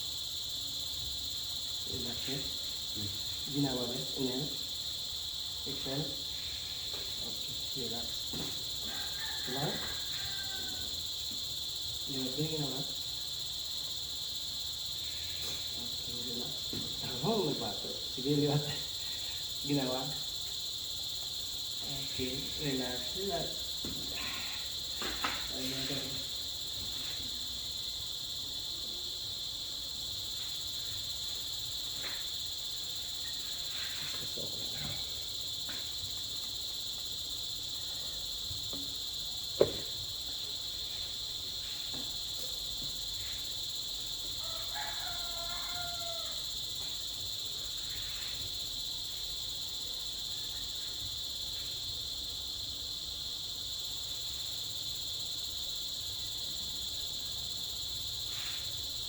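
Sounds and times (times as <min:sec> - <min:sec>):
insects chirring: 0:00.0 - 0:59.0.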